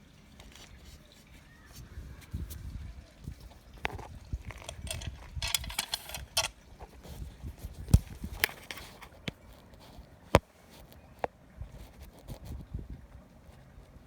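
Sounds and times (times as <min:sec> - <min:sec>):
rattling scrape: 0:03.8 - 0:07.2
metal parts clattering: 0:04.5 - 0:06.6.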